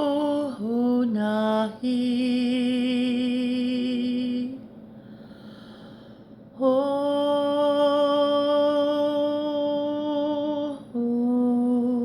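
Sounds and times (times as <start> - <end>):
woman breathing softly: 4.8 - 6.5.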